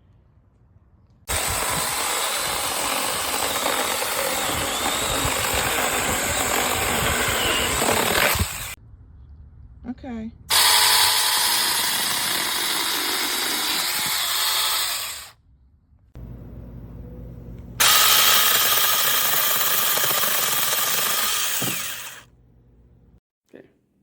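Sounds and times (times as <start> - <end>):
electric chainsaw running: 1.3 - 8.8, 10.5 - 15.3, 17.8 - 22.3.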